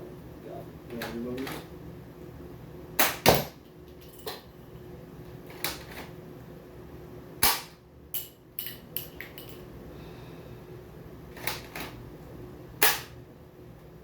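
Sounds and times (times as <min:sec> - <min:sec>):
toy launcher pops and clicks: 0:07.4 - 0:07.8, 0:12.8 - 0:13.2.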